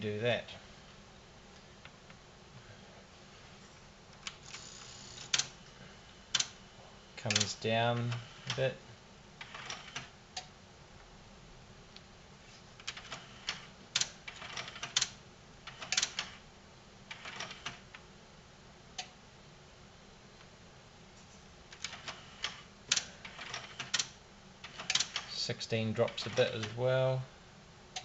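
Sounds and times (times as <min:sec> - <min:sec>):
metal probe tips clicking on pins: 0:24.7 - 0:25.4.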